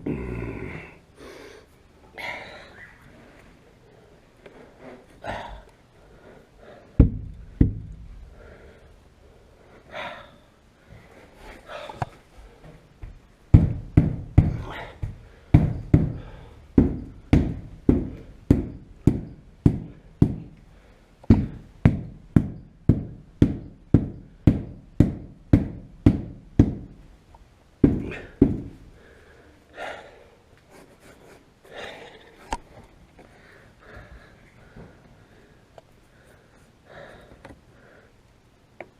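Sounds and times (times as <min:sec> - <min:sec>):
dull knocks on window glass: 0:13.0 - 0:16.2.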